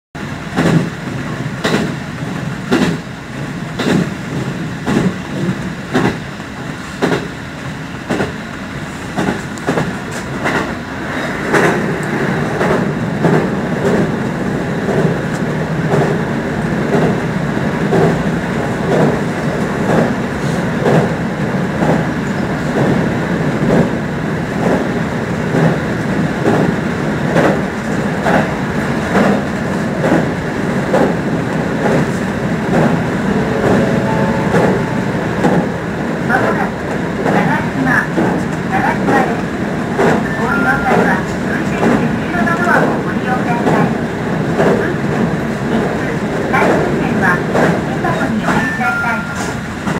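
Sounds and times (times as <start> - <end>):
train wheels clicking over rail joints: 0.5 - 7.4, 8.0 - 33.2
electric train running: 30.9 - 37.4.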